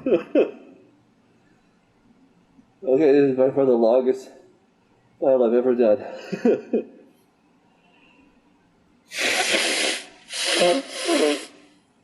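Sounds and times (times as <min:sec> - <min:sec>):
man sneezing: 0:09.1 - 0:11.7.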